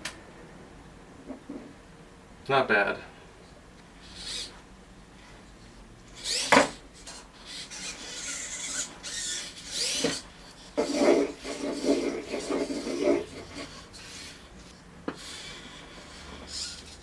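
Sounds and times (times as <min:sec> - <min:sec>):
scratchy scrubbing on a surface: 0:10.8 - 0:14.4.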